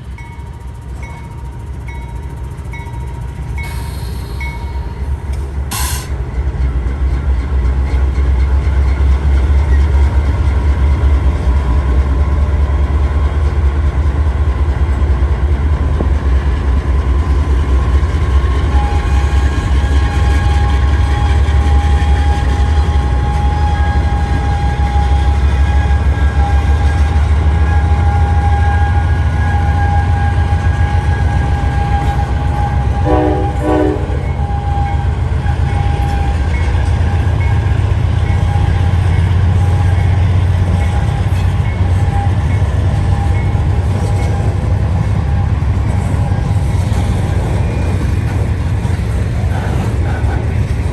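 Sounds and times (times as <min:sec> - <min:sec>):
freight train rumbling: 0:00.0 - 0:50.9
train horn blast: 0:27.6 - 0:36.4.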